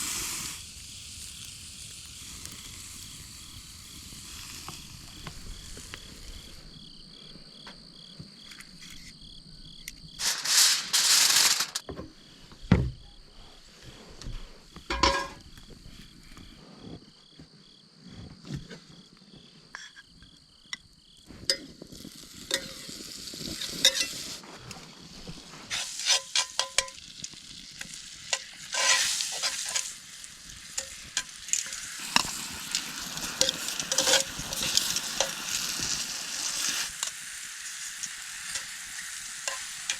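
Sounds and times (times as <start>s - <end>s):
fire crackling and popping: 0.0s - 7.0s, 10.2s - 11.8s, 20.3s - 39.9s
steak sizzling over campfire: 0.0s - 7.5s, 8.4s - 11.8s, 20.2s - 39.9s
loud rustling: 10.2s - 11.8s
handling noises: 10.2s - 12.1s.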